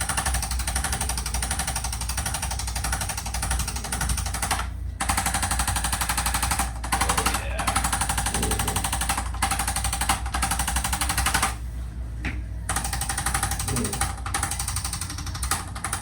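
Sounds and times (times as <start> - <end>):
massage gun hammering: 0.0 - 11.6.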